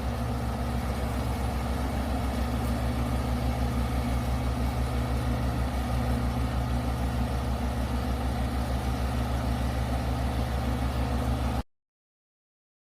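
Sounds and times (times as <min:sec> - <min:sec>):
engine idling: 0:00.0 - 0:11.6.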